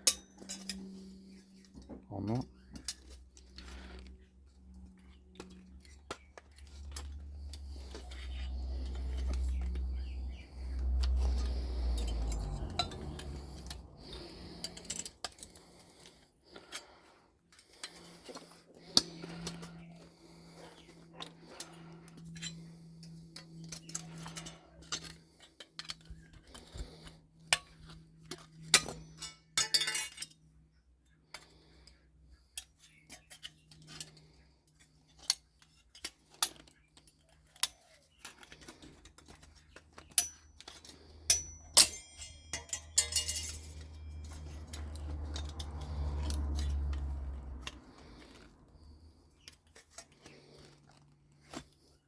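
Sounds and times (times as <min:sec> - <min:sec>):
scrap metal clinking: 0:00.0 - 0:30.6, 0:32.5 - 0:52.0
low rumble: 0:06.8 - 0:14.9
low steady hum: 0:40.0 - 0:49.2.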